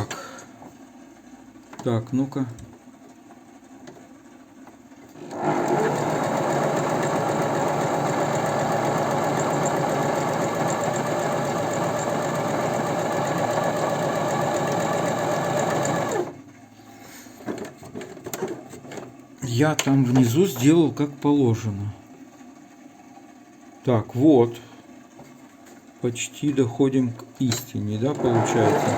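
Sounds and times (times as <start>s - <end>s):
electric sewing machine sewing: 5.2s - 16.4s, 28.0s - 28.9s.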